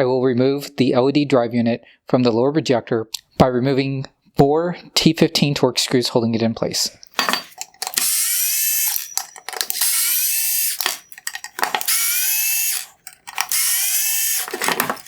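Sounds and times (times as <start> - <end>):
power screwdriver whining: 7.4 - 15.0
screwdriver bit clicks: 7.4 - 15.0.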